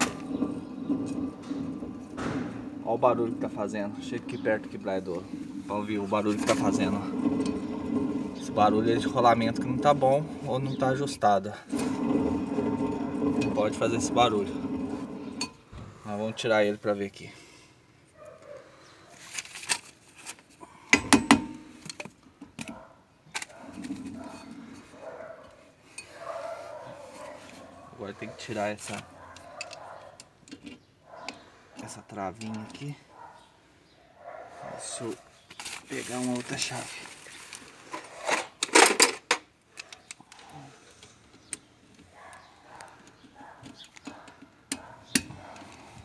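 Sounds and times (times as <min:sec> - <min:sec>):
hand tools clanking on metal: 0:00.0 - 0:16.3, 0:20.9 - 0:22.8, 0:28.0 - 0:33.0, 0:37.9 - 0:39.9.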